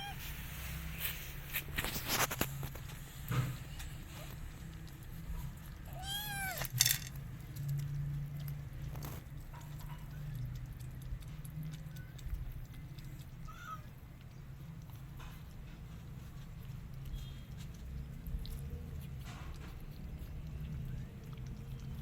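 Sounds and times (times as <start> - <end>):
cat meowing: 0.0 - 0.3, 5.9 - 6.7, 13.4 - 13.9
cat lapping with wet clicks: 1.7 - 6.6, 7.2 - 22.0.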